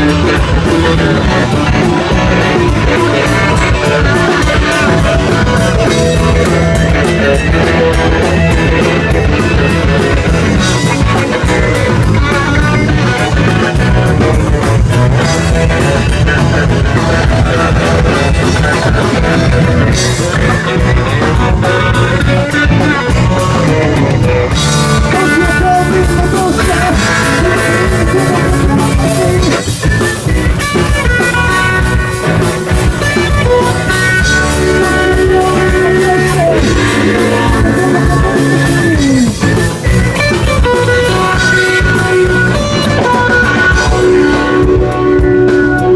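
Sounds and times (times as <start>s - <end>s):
live rock band playing: 0.0s - 45.9s
person singing or shouting: 25.0s - 29.9s, 34.4s - 42.0s.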